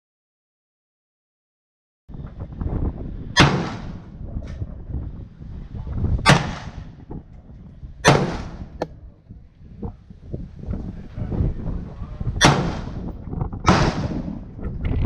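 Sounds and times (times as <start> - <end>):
rifle shots with echo: 3.4 - 4.2, 6.2 - 7.0, 8.0 - 9.0, 12.4 - 14.5.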